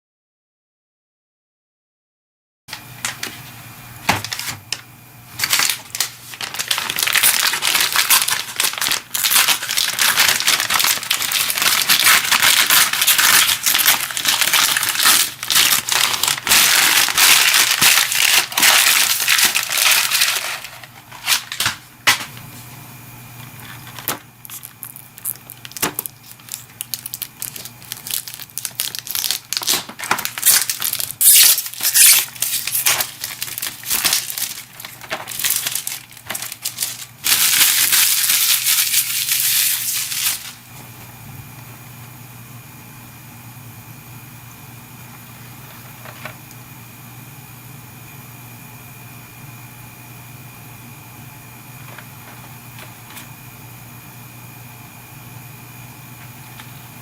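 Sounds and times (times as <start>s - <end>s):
packaging crinkling and rustling: 4.1s - 22.3s, 23.4s - 40.9s, 45.6s - 46.5s, 51.8s - 53.4s.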